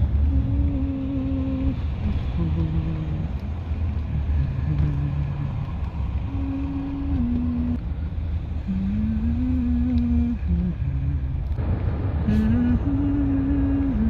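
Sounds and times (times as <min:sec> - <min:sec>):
car engine and road noise: 0:00.0 - 0:14.0
man humming: 0:00.3 - 0:03.4, 0:04.1 - 0:05.6, 0:06.2 - 0:07.8, 0:08.7 - 0:11.5, 0:12.2 - 0:14.0.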